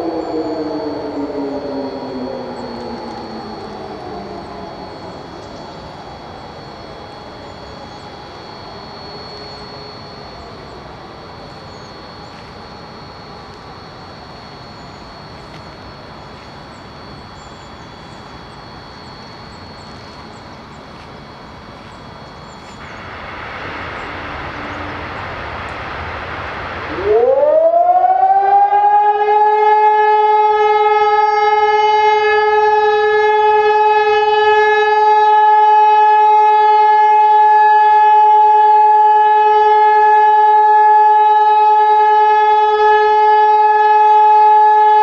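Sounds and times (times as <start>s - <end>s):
faint high whistles: 0.0s - 23.1s
low steady tone: 0.0s - 28.2s
sirens winding down: 0.0s - 45.0s.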